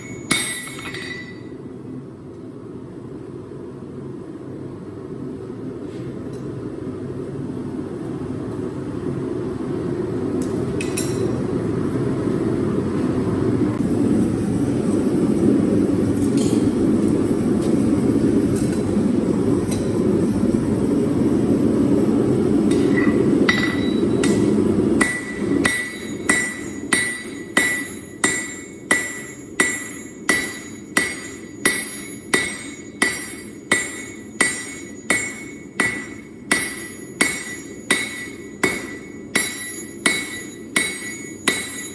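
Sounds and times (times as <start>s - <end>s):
hammer striking steel on anvil: 0.0s - 1.6s, 10.4s - 11.4s, 22.6s - 41.9s.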